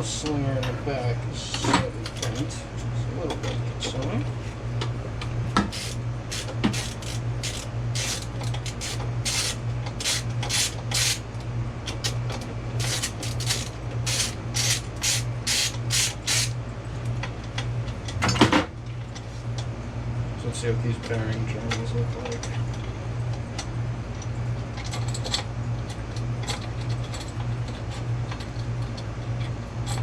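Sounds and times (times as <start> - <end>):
steady low hum: 0.0 - 30.0
socket ratchet strokes: 5.7 - 11.2, 12.8 - 16.5.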